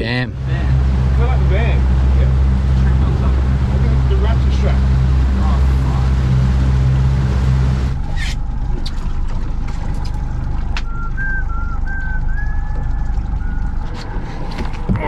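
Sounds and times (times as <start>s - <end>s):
boat engine low rumble: 0.0s - 15.0s
person whistling a tune: 10.8s - 13.9s.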